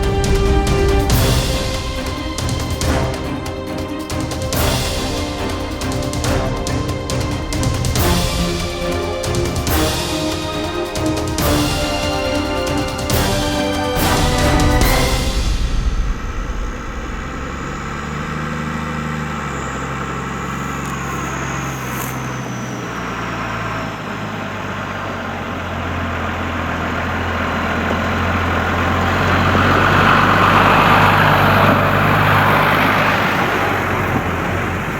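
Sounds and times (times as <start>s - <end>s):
high whine: 0.0s - 23.6s
tractor engine running: 0.0s - 34.9s.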